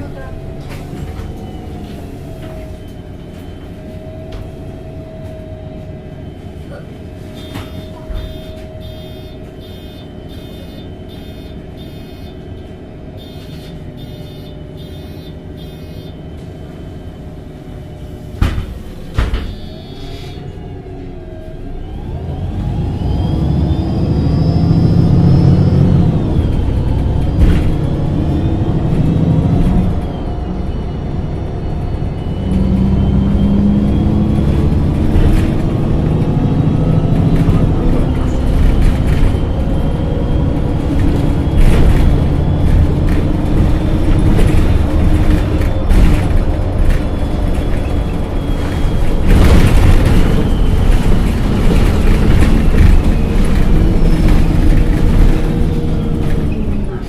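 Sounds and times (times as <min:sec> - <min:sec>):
bus engine: 0:00.0 - 0:57.0
high beeps: 0:07.3 - 0:12.4, 0:13.2 - 0:16.2, 0:19.4 - 0:20.4
bus doors knocking shut: 0:18.4 - 0:20.0.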